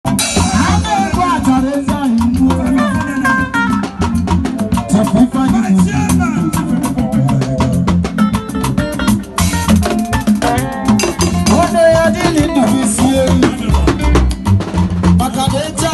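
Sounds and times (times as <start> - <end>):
loud upbeat music: 0.0 - 15.9.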